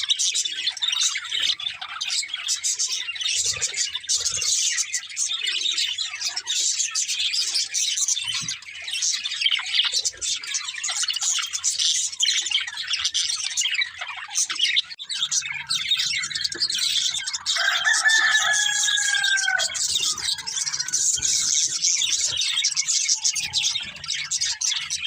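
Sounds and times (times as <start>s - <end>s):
budgerigars chattering and warbling: 0.0s - 25.0s
drawn-out falling bird call: 17.5s - 22.1s.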